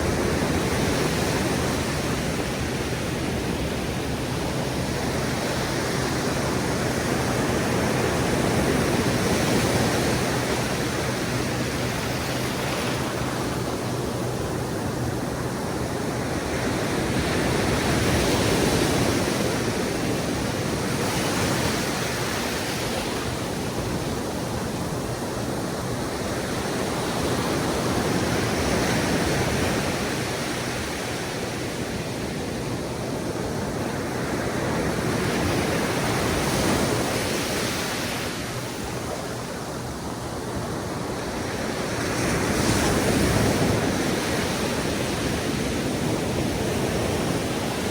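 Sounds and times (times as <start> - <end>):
ocean waves on sandy beach: 0.0 - 47.9.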